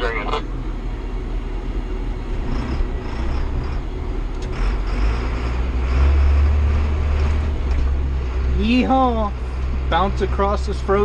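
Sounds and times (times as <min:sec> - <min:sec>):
tractor diesel engine rumbling: 0:00.0 - 0:11.0.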